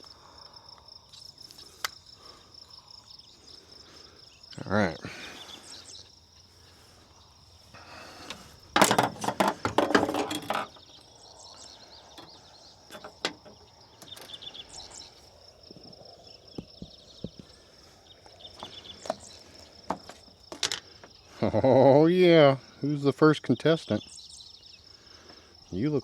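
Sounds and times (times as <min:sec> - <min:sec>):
insects chirring: 0:00.0 - 0:26.0
handling noise rustling: 0:08.1 - 0:11.1, 0:18.6 - 0:21.0.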